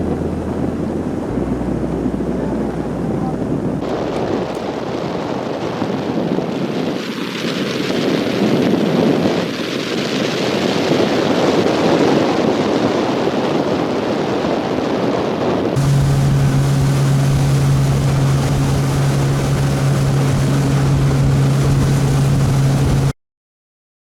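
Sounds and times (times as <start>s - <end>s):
boat motor drone: 0.0s - 8.6s, 15.7s - 23.1s
rushing wind and water: 0.0s - 23.2s.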